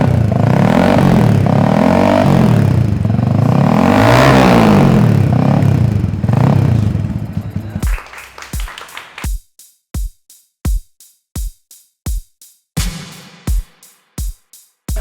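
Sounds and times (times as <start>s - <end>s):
motorcycle engine revving: 0.0s - 8.0s.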